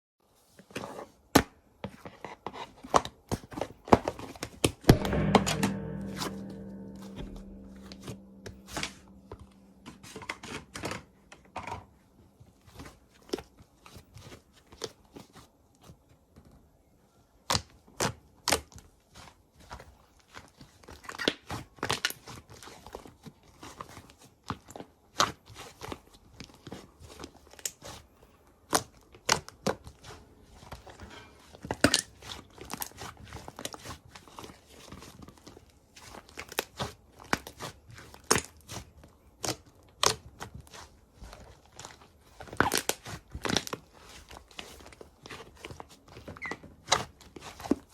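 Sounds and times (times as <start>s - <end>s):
music: 4.9s - 11.5s.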